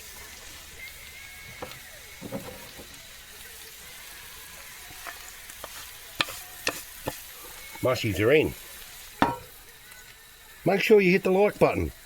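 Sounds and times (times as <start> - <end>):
mushrooms sizzling in a frying pan: 0.0 - 12.0
cooking utensil clicks and taps: 9.2 - 9.6.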